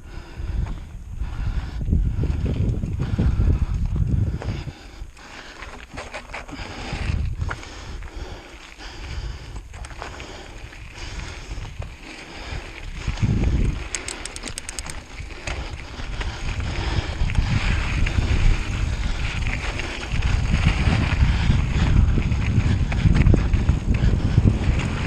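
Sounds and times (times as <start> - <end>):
wind buffeting microphone: 0.0 - 25.0
rapid even ticks: 13.6 - 17.1.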